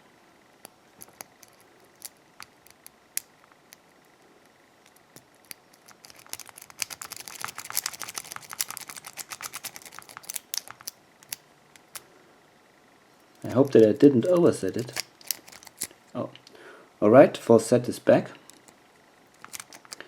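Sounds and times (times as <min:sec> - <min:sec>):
lock pick clicking on pins: 0:01.0 - 0:03.8.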